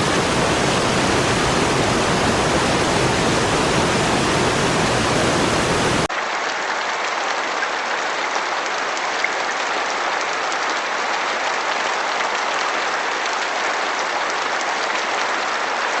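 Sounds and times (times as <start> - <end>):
steady rain hiss: 0.0 - 6.1
waterfall rushing: 0.0 - 6.1.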